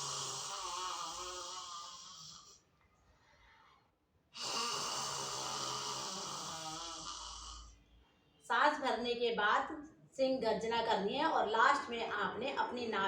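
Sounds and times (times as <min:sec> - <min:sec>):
woman roaring throaty exhale: 0:00.0 - 0:02.2.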